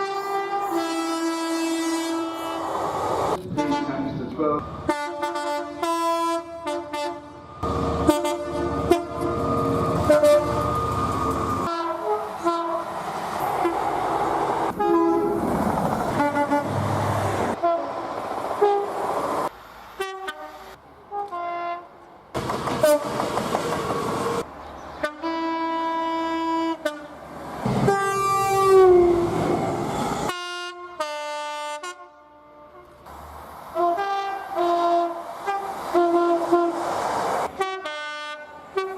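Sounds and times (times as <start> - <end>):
train horn blasts: 0.0 - 2.6, 3.5 - 4.2, 4.8 - 10.7, 11.6 - 12.9, 14.7 - 15.4, 16.1 - 16.8, 20.0 - 21.9, 22.8 - 23.2, 25.0 - 27.1, 27.8 - 29.3, 30.3 - 33.0, 33.8 - 36.8, 37.6 - 38.9
rumble of passing train: 5.8 - 30.7, 32.5 - 38.9.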